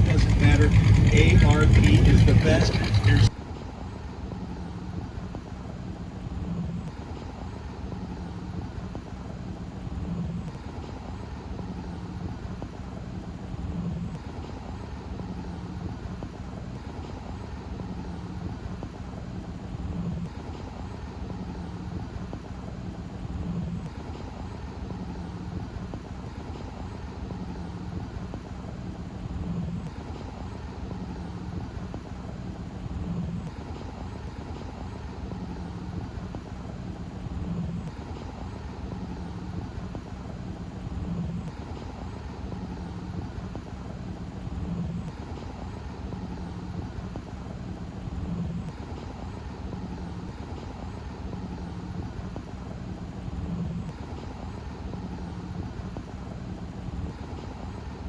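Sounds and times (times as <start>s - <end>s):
low hum: 0.0s - 3.4s.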